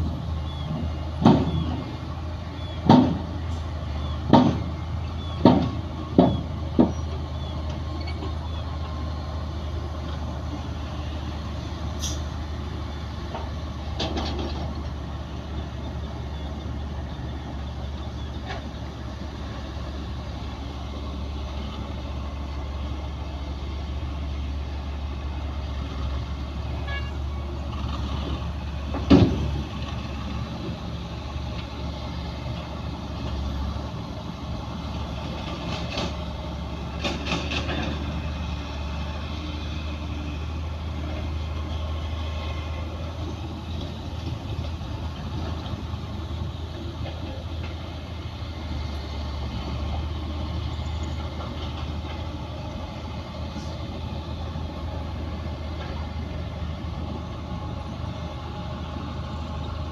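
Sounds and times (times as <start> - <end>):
diesel machinery engine drone: 0.0 - 59.9.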